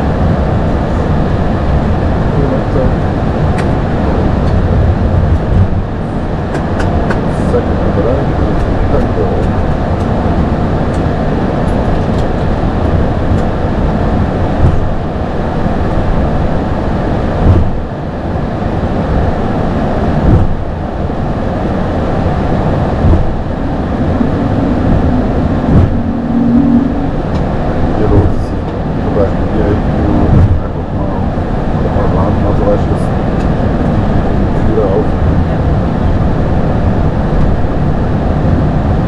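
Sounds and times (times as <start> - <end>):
airplane rumble: 0.0 - 39.0
faint steady tone: 20.9 - 33.0
brief thumps: 24.1 - 27.5.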